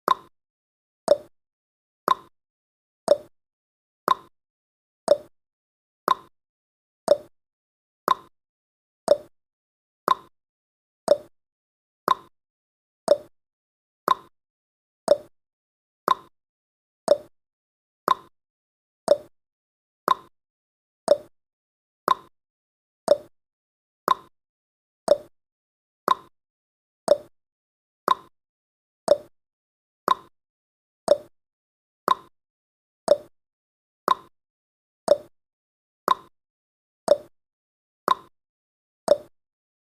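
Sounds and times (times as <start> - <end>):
clock tick-tock: 0.1 - 0.3, 1.1 - 1.3, 2.1 - 2.3, 3.1 - 3.3, 4.1 - 4.3, 5.1 - 5.3, 6.1 - 6.3, 7.1 - 7.3, 8.1 - 8.3, 9.1 - 9.3, 10.1 - 10.3, 11.1 - 11.3, 12.1 - 12.3, 13.1 - 13.3, 14.1 - 14.3, 15.1 - 15.3, 16.1 - 16.3, 17.1 - 17.3, 18.1 - 18.3, 19.1 - 19.3, 20.1 - 20.3, 21.1 - 21.3, 22.1 - 22.3, 23.1 - 23.3, 24.1 - 24.3, 25.1 - 25.3, 26.1 - 26.3, 27.1 - 27.3, 28.1 - 28.3, 29.1 - 29.3, 30.1 - 30.3, 31.1 - 31.3, 32.1 - 32.3, 33.1 - 33.3, 34.1 - 34.3, 35.1 - 35.3, 36.1 - 36.3, 37.1 - 37.3, 38.1 - 38.3, 39.1 - 39.3.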